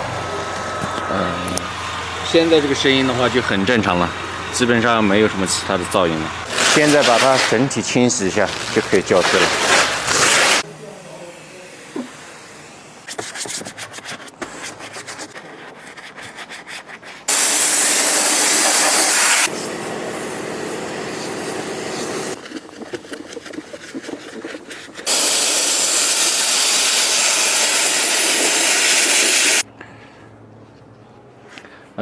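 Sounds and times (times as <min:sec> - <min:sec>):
brush scrubbing: 0:00.0 - 0:10.6, 0:21.2 - 0:25.8
loud hissing spray: 0:01.1 - 0:13.0, 0:17.3 - 0:22.4, 0:25.1 - 0:29.6.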